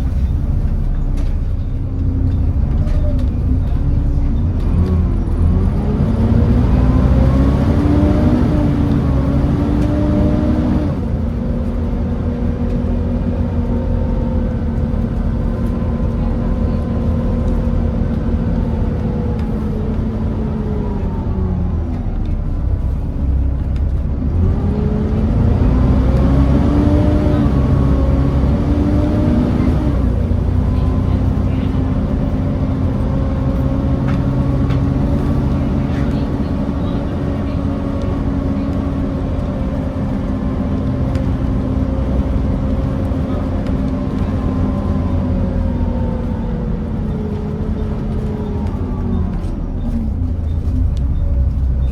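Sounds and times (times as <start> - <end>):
bus diesel engine: 0.0 - 51.9.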